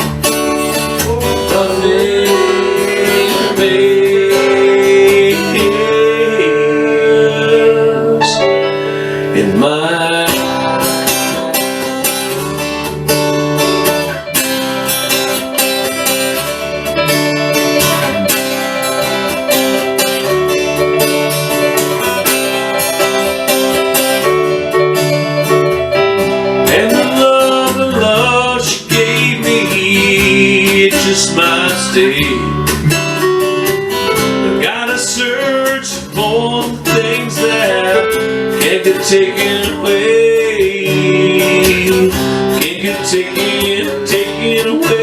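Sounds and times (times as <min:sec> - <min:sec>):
acoustic guitar strumming: 0:00.0 - 0:45.0
sliding melody line: 0:01.0 - 0:10.2, 0:14.0 - 0:35.7.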